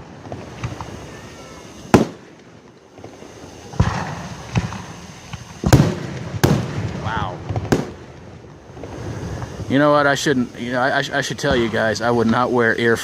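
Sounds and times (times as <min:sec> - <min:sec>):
fireworks bursting with bangs: 0:00.0 - 0:13.0
fireworks crackle: 0:00.0 - 0:13.0.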